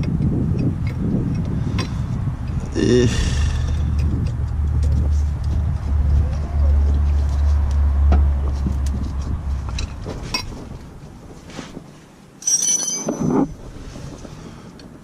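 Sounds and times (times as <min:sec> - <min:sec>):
low rumble: 0:00.7 - 0:11.3
wrenches clinking: 0:12.4 - 0:13.5.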